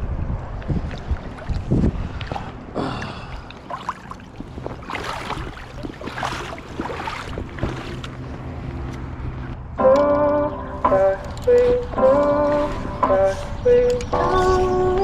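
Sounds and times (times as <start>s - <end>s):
wind on microphone: 0.0s - 3.4s, 4.0s - 9.5s
creek water running: 0.9s - 8.9s, 11.2s - 15.0s
music: 9.8s - 15.0s
footsteps: 10.9s - 15.0s.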